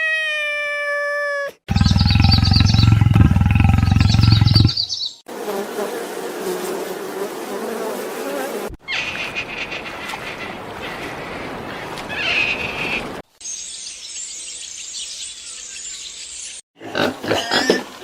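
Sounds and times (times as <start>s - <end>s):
drawn-out pitched animal call: 1.7s - 4.9s
rough noisy animal call: 1.7s - 5.0s
low insect-like buzz: 5.3s - 8.7s.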